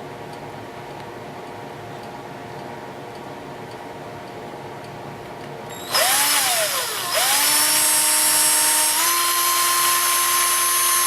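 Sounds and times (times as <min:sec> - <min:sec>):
electric drill motor whine: 0:05.7 - 0:11.0.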